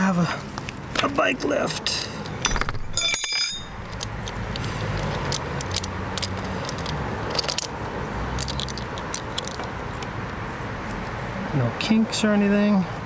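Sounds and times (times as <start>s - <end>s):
metallic clinks and jingles: 2.4s - 4.4s.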